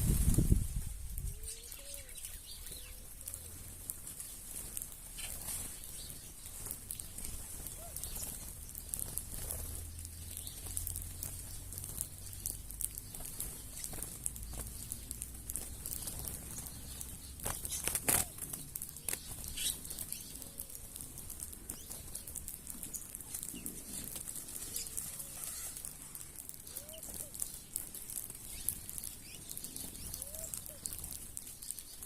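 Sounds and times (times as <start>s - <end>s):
birds pecking clicks and rustles: 0.0s - 32.0s
wings flapping: 0.0s - 32.0s
short low bird calls: 1.4s - 3.6s, 30.0s - 31.0s.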